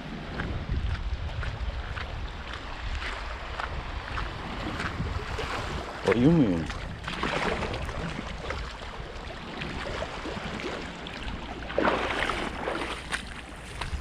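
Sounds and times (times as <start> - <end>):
wind on microphone: 0.0 - 14.0
water washing against rocks: 4.1 - 14.0.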